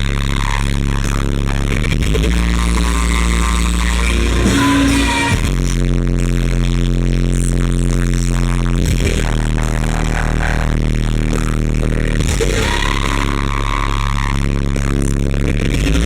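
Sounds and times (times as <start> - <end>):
loud live band music: 4.0 - 5.5.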